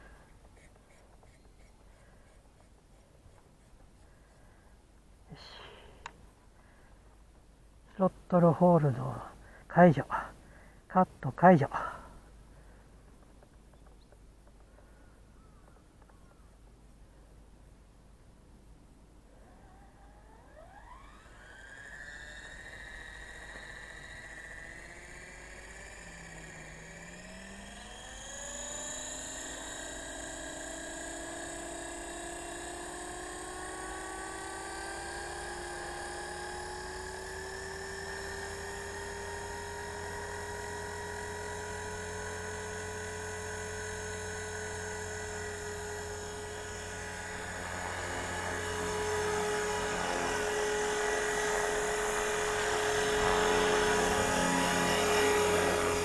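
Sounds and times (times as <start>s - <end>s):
rc helicopter motor whine: 0.0s - 6.8s, 19.3s - 56.0s.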